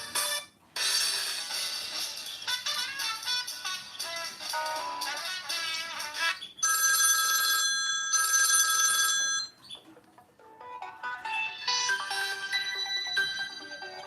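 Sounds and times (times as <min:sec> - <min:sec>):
chiming phone ring: 0:06.6 - 0:09.6, 0:11.7 - 0:14.0
synthesized ringtone melody: 0:10.8 - 0:14.0.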